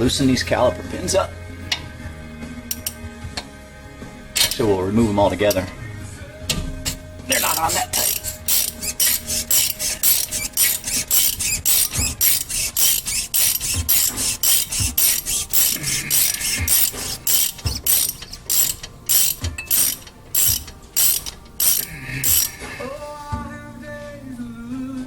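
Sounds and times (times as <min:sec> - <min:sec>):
socket ratchet clicking: 0:02.7 - 0:03.0, 0:04.4 - 0:04.6, 0:06.9 - 0:22.6.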